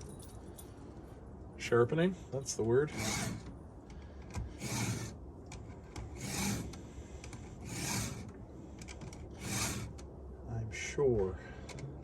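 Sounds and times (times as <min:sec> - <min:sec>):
file rasping on chainsaw chain: 0:02.9 - 0:03.4, 0:04.6 - 0:05.1, 0:06.2 - 0:06.7, 0:07.6 - 0:08.3, 0:09.4 - 0:10.0.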